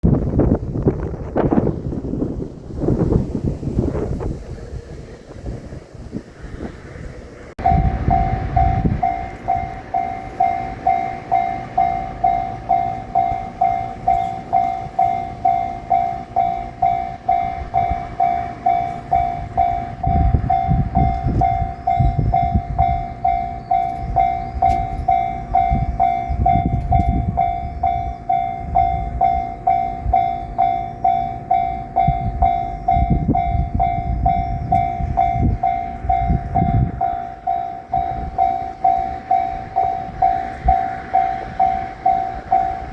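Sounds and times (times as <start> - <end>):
train wheels rumbling on rails: 0.0 - 42.9
level-crossing bell dinging: 7.6 - 42.9.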